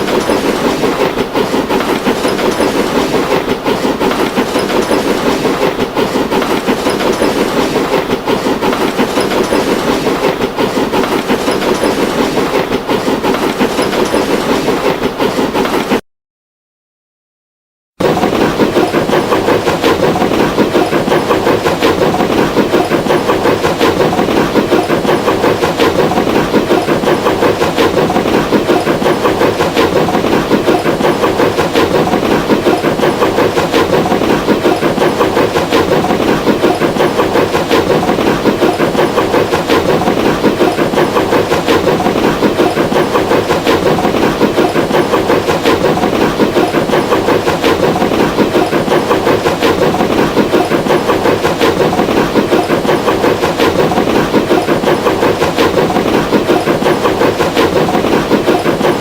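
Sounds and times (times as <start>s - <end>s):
train rumble and rhythmic clatter: 0.0s - 16.0s, 18.0s - 59.0s.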